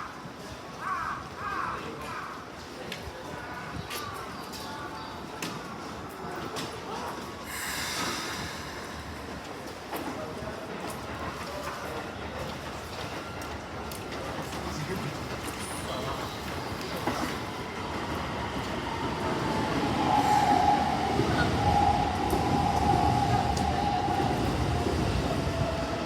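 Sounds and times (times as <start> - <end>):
electric train rumbling and whining: 6.0 - 26.0.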